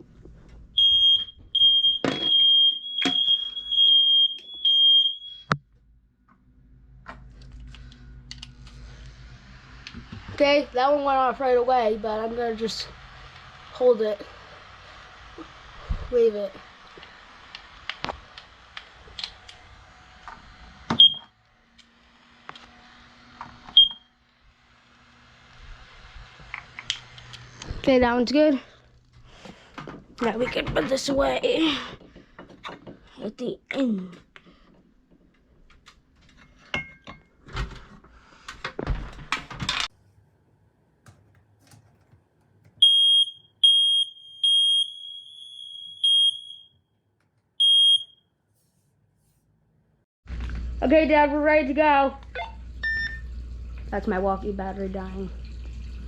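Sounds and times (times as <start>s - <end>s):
smoke alarm beeps: 0.8s - 5.6s, 21.0s - 21.3s, 23.8s - 24.1s, 42.8s - 46.8s, 47.6s - 48.3s, 52.4s - 53.3s.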